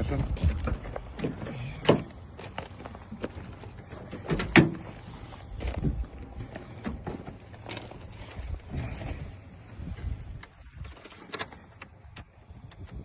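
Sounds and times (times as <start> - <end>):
footsteps: 2.0 - 10.6.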